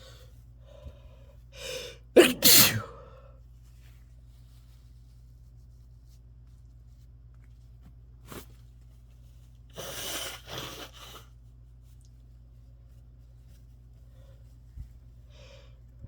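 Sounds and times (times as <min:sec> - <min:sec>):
person sneezing: 0:01.6 - 0:03.2.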